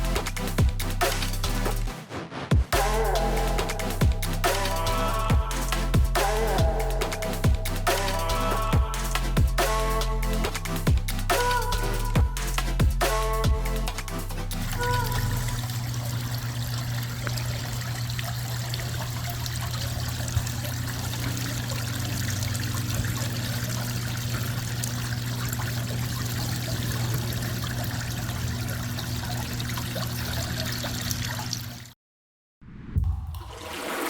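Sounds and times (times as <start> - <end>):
low hum: 2.8 - 29.5
fountain water trickling and splashing: 13.7 - 31.9.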